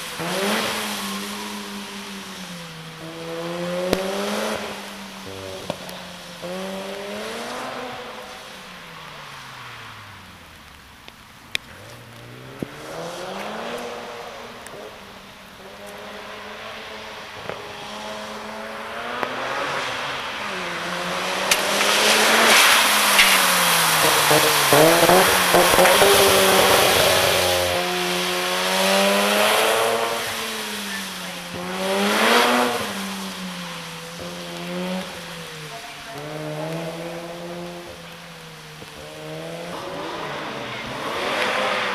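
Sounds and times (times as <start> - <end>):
rotary engine revving: 18.0 - 37.9.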